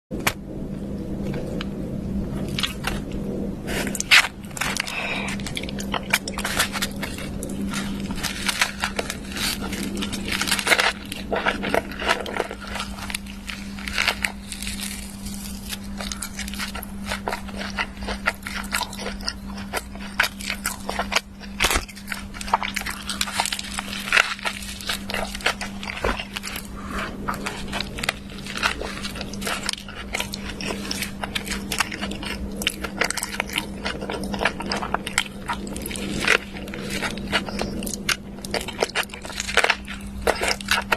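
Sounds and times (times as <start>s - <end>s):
steady low hum: 0.1s - 40.9s
crunching and chewing: 0.2s - 40.9s.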